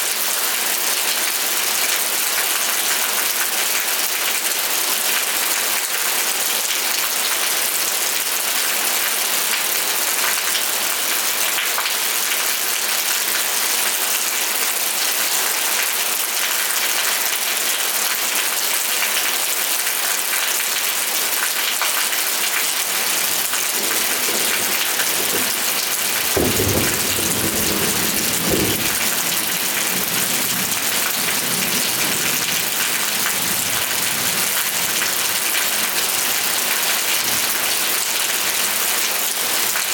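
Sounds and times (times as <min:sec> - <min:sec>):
steady rain falling: 0:00.0 - 0:39.9
thunder rumble: 0:22.9 - 0:35.3.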